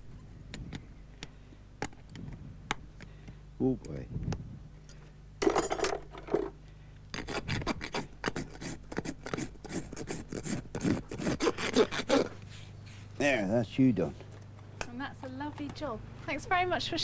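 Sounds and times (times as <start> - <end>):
rasp filing a hoof: 7.2 - 12.4.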